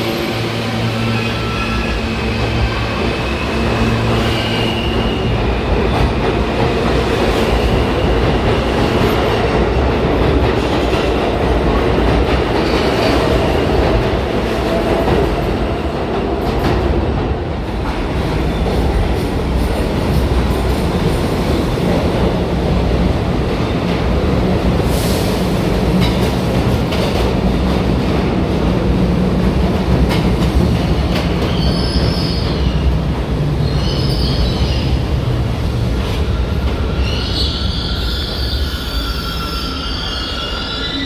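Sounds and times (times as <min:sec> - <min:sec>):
subway train rumbling: 0:00.0 - 0:41.0.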